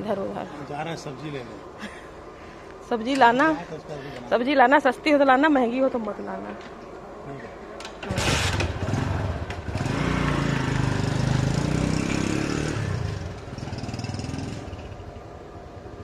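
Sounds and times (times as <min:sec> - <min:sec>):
small vehicle engine revving: 0:08.0 - 0:15.0.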